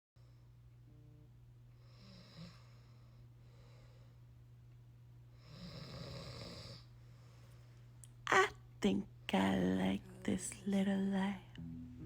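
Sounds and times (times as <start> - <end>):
soft snores: 1.8 - 3.2, 5.4 - 6.9.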